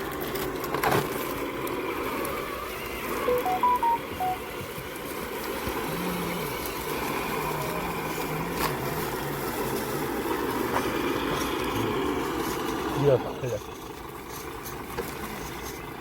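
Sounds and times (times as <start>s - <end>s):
electric toy car motor crawling: 0.0s - 3.3s, 4.8s - 16.0s
short electronic beeps: 3.3s - 4.4s.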